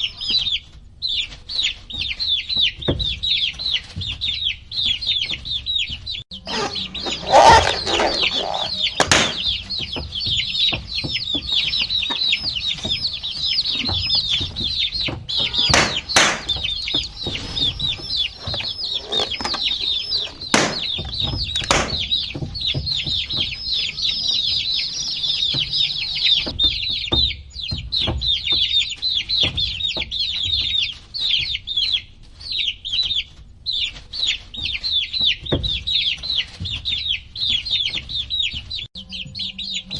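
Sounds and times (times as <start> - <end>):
baby chicks peeping: 0.0 - 39.9
sharp taps: 6.9 - 26.0.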